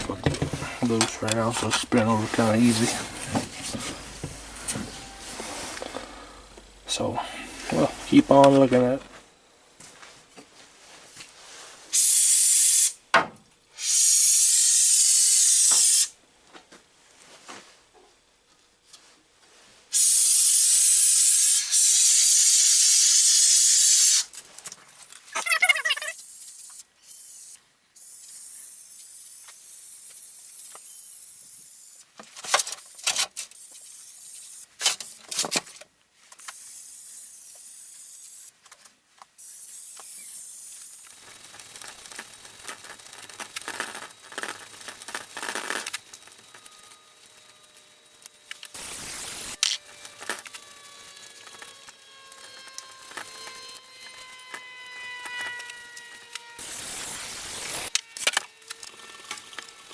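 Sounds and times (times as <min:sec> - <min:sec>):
steady high hiss: 0:00.0 - 0:09.1, 0:36.3 - 0:38.6, 0:39.2 - 0:49.8, 0:56.6 - 0:58.0.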